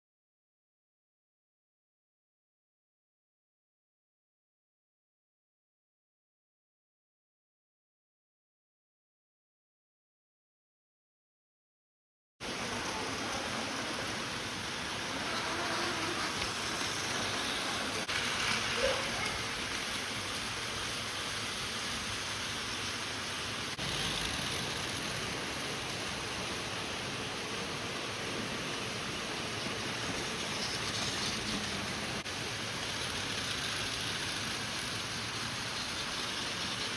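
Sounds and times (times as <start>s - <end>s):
toy train motor whirring: 14.9s - 26.6s, 29.6s - 36.9s.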